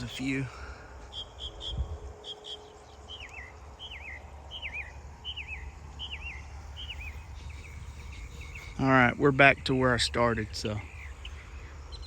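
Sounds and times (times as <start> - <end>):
songbird whistled notes: 1.1 - 8.8.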